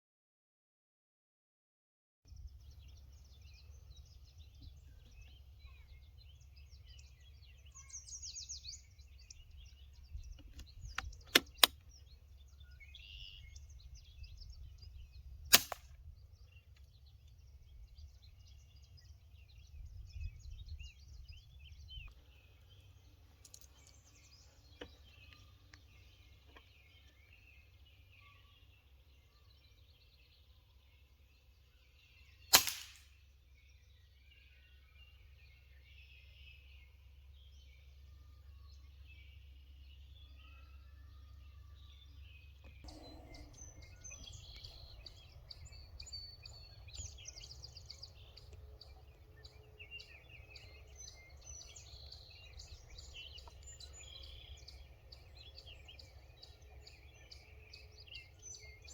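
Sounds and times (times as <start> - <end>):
birds chirping: 2.3 - 58.9
air rifle cracks: 15.5 - 16.0, 32.5 - 33.2.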